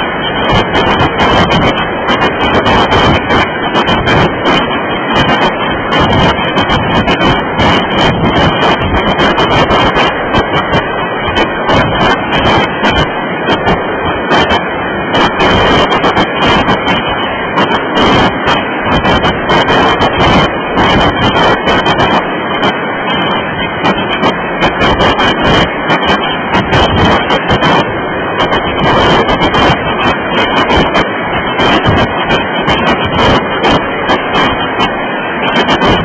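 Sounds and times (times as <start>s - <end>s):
freight train rumble and rattle: 0.0s - 36.0s.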